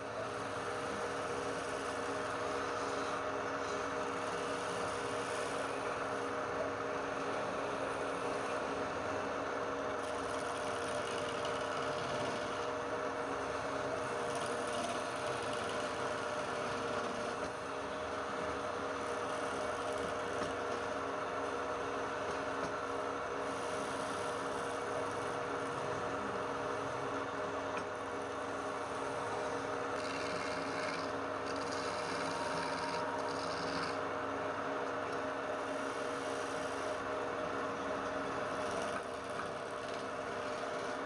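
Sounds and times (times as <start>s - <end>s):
wood lathe motor hum: 10.1s - 12.7s, 28.2s - 34.0s, 35.7s - 37.0s, 38.5s - 40.9s
tool scraping spinning wood: 29.4s - 34.0s, 38.5s - 41.0s.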